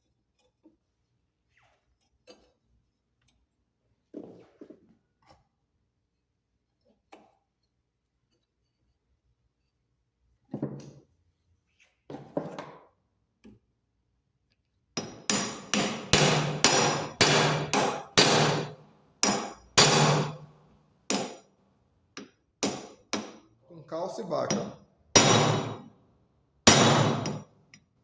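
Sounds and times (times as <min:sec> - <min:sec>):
hammer blows on metal: 0:15.0 - 0:20.5, 0:24.4 - 0:25.9, 0:26.7 - 0:27.4.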